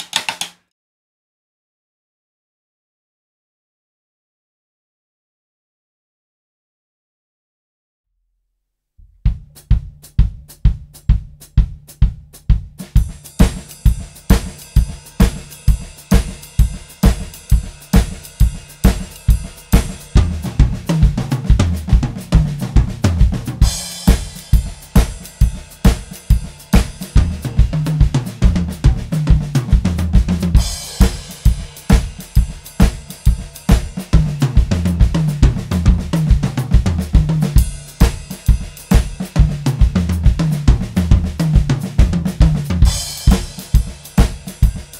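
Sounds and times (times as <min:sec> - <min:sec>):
drum kit beat: 0:00.0 - 0:00.6, 0:09.0 - 0:44.9
hi-hat or ride cymbal: 0:09.4 - 0:44.9
crash cymbals: 0:12.9 - 0:21.1, 0:23.6 - 0:28.8, 0:30.5 - 0:34.5.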